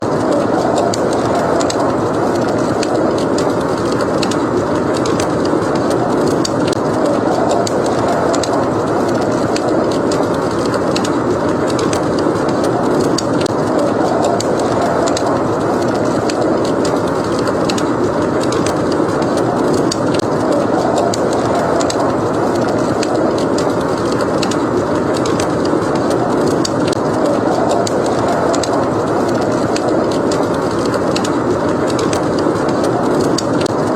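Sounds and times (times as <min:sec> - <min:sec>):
blizzard wind rushing: 0:00.0 - 0:33.9
wood fire crackling: 0:00.0 - 0:33.9.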